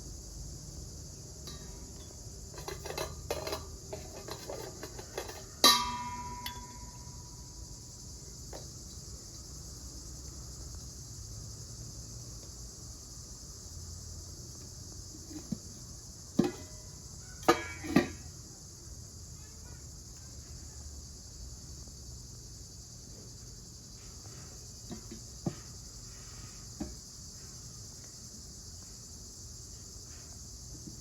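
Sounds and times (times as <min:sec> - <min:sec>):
crickets chirring: 0:00.0 - 0:31.0
utensils and dishes clinking: 0:01.5 - 0:07.1.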